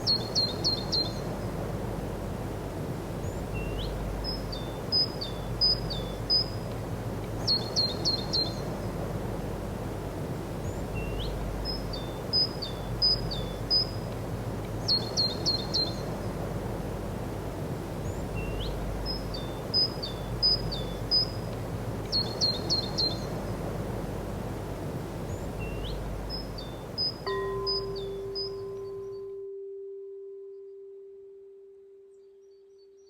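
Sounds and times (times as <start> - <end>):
songbird singing high notes: 0.0 - 1.4, 14.8 - 16.3, 25.3 - 29.6
low background noise: 0.0 - 33.0.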